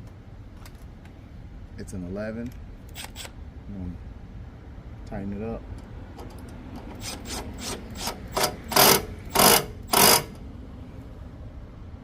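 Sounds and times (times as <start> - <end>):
ratchet wrench rasping: 6.4 - 10.4.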